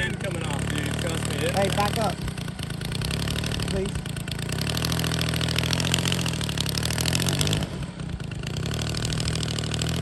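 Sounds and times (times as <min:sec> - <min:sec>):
model plane engine running: 0:00.0 - 0:10.0
propeller blowing air: 0:00.0 - 0:10.0.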